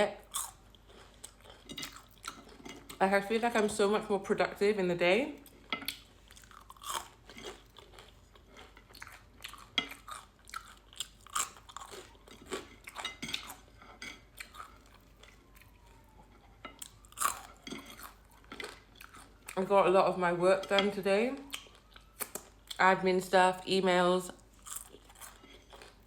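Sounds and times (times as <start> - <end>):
person chewing crunchy food: 0.2 - 3.0, 5.4 - 19.6, 21.4 - 22.8, 24.4 - 26.0.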